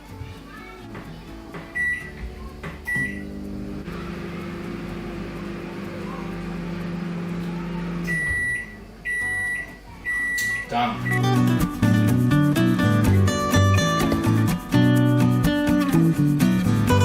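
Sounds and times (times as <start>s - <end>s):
microwave humming: 1.3s - 14.4s
long microwave beeps: 1.8s - 2.1s, 2.9s - 11.6s
microwave beep: 1.8s - 2.1s, 2.9s - 11.6s.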